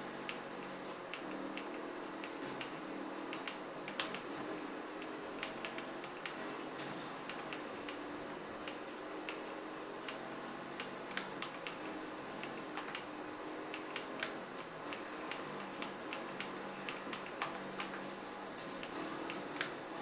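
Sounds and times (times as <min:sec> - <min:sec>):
mechanical keyboard keystroke clicks: 0:01.1 - 0:04.2, 0:12.4 - 0:13.1.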